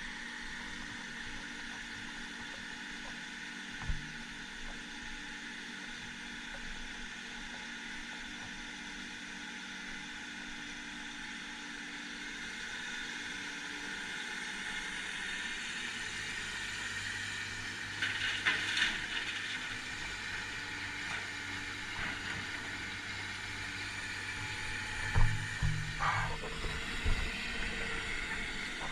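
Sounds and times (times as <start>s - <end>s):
diesel engine running: 15.4s - 28.9s.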